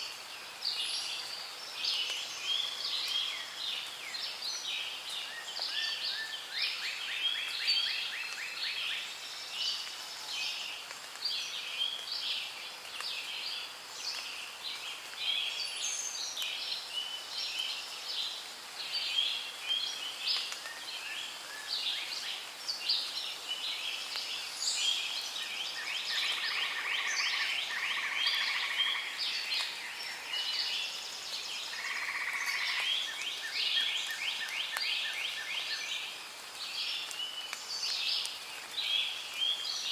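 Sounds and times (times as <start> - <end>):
birds chirping and trilling: 24.0 - 36.1.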